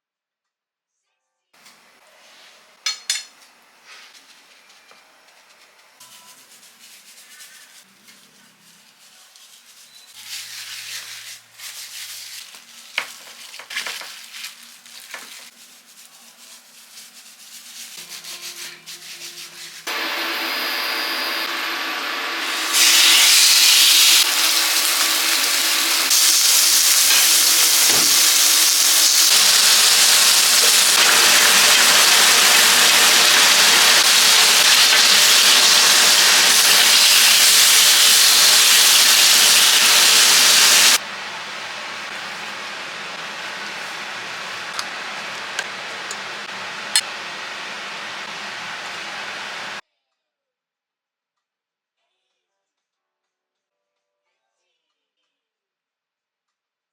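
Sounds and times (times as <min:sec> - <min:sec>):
handling and rubbing: 0:03.8 - 0:19.9
steak sizzling in a hot pan: 0:22.4 - 0:41.0.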